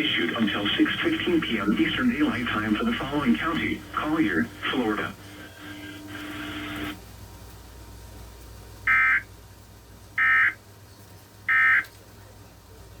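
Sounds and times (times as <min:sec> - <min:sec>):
steady buzzy tone: 0:00.0 - 0:07.0.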